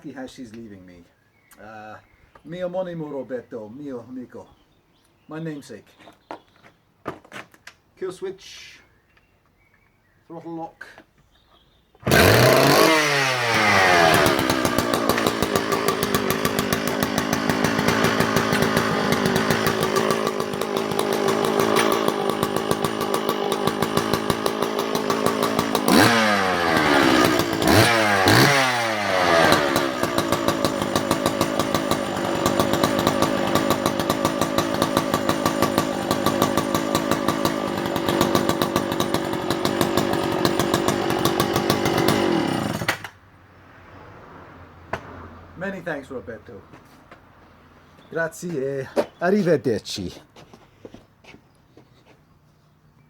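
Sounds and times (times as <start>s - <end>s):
two-stroke chainsaw revving and idling: 12.0s - 43.1s.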